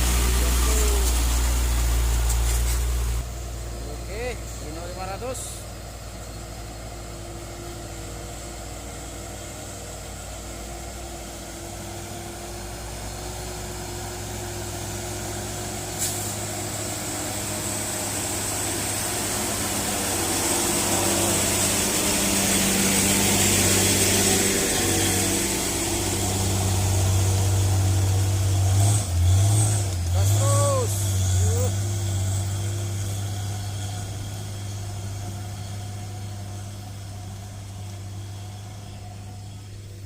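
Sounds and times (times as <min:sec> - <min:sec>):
diesel truck engine drone: 0:00.0 - 0:40.0
tyre and road hiss: 0:00.0 - 0:40.0.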